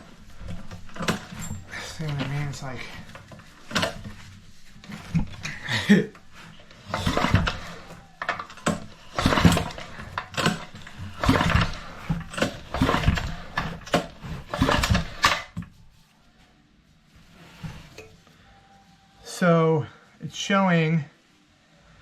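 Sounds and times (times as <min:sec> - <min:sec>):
recoil starter rope pulls: 0:00.0 - 0:15.8.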